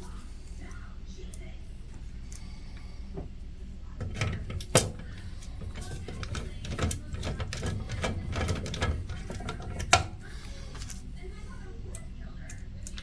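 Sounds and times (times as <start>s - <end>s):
small clicks and clatter of parts: 4.0s - 11.1s, 11.9s - 13.0s.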